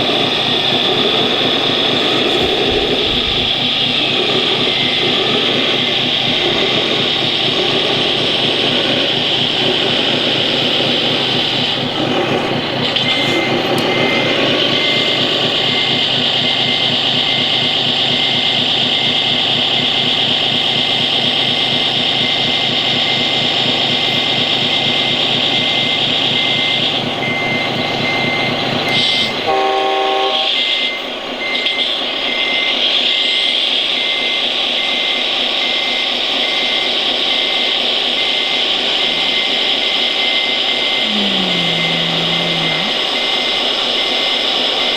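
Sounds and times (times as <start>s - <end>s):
pulsing engine-like drone: 0.0s - 30.5s, 37.0s - 44.9s
high motor whine: 0.0s - 30.7s, 36.5s - 44.9s
horn-like tone: 29.5s - 30.9s, 41.0s - 43.0s.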